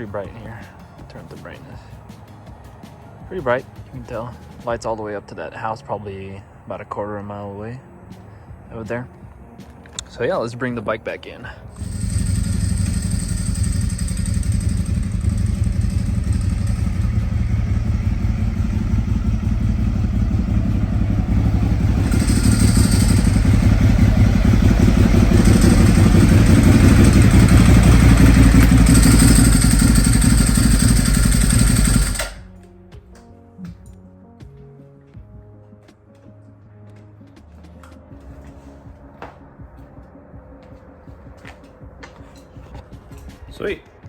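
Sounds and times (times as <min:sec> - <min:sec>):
faint background music: 0:00.0 - 0:11.8, 0:32.4 - 0:44.0
motorcycle engine running: 0:11.7 - 0:32.6.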